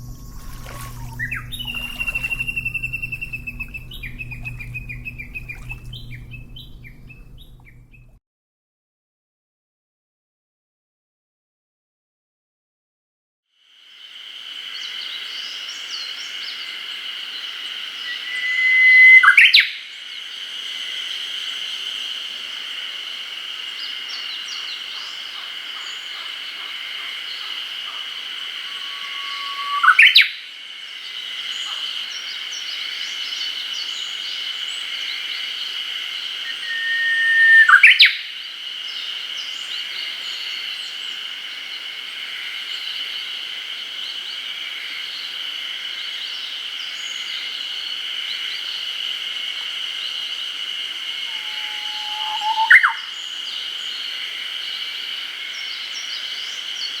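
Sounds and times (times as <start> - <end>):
faint chirps: 0.0 - 8.2, 23.6 - 41.1, 51.1 - 54.2
insects or frogs droning: 0.0 - 8.2, 13.6 - 57.0
warbler singing: 0.0 - 8.2, 27.3 - 30.4, 36.4 - 38.2, 51.3 - 54.0.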